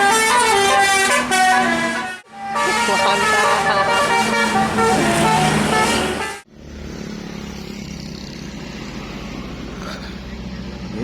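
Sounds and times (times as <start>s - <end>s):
bus horn melody: 0.0s - 6.5s
bus engine hum: 0.0s - 11.0s.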